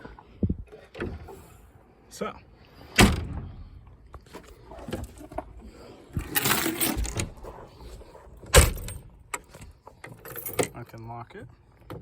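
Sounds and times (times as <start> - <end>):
liftgate slamming shut: 8.5 - 9.0.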